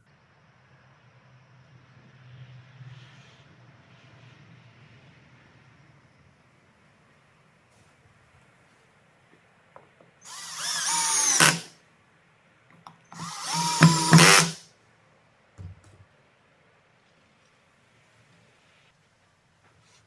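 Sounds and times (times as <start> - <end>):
power drill whining: 10.2 - 11.7, 13.0 - 14.6.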